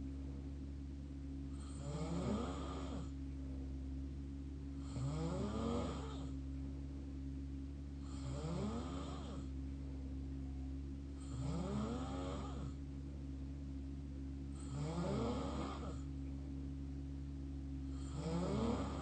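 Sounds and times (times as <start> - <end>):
steady low hum: 0.0 - 19.0
open-mouth snoring: 1.5 - 3.2, 4.8 - 6.4, 8.0 - 9.5, 11.2 - 12.8, 14.6 - 16.1, 17.9 - 19.0.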